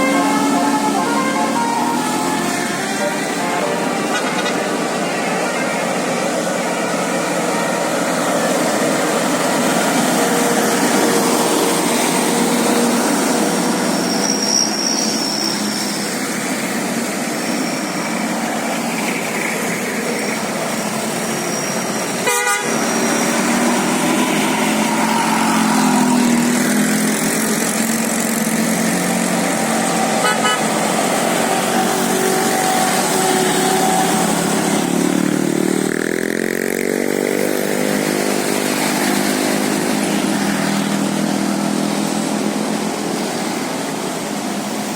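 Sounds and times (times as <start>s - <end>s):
bus musical horn tooting: 0.0s - 7.8s, 22.2s - 26.2s, 30.0s - 34.9s
engine running: 0.0s - 44.9s
traffic noise: 0.0s - 44.9s.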